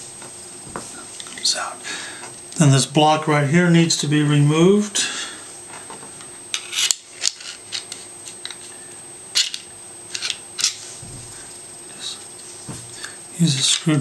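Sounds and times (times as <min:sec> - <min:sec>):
metal parts clicking and scraping: 0:06.5 - 0:08.7, 0:09.4 - 0:10.8.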